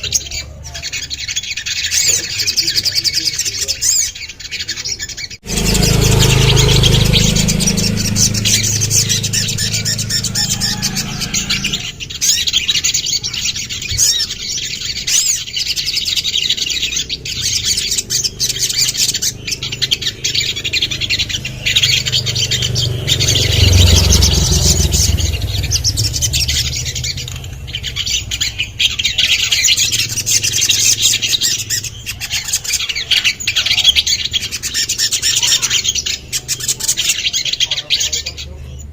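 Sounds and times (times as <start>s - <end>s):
bird calling in sharp high chirps: 0.0s - 38.9s
low rumble: 5.4s - 12.3s, 17.7s - 31.3s.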